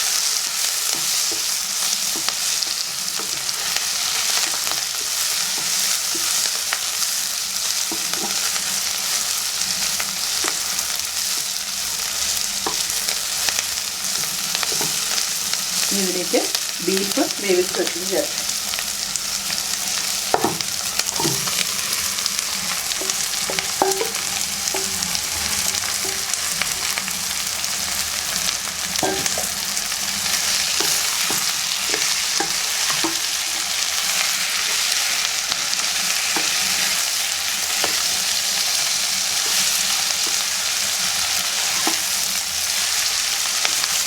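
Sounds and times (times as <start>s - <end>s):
meat sizzling in a pan: 0.0s - 44.0s
utensil knocking against pan: 20.3s - 21.6s, 23.0s - 25.0s, 29.0s - 29.6s.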